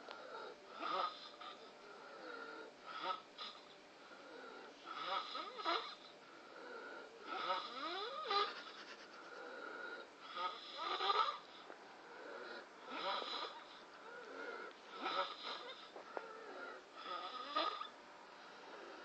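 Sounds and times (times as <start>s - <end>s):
person snoring: 0.1s - 19.0s.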